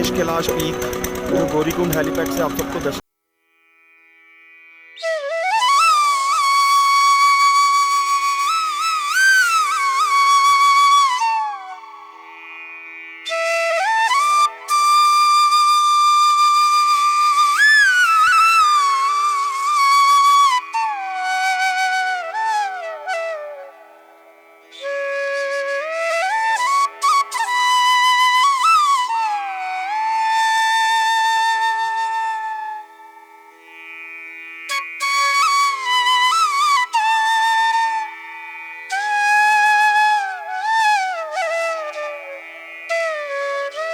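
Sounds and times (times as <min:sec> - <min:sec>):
flute melody: 0:00.0 - 0:03.0, 0:05.0 - 0:12.3, 0:13.2 - 0:33.4, 0:34.7 - 0:43.9.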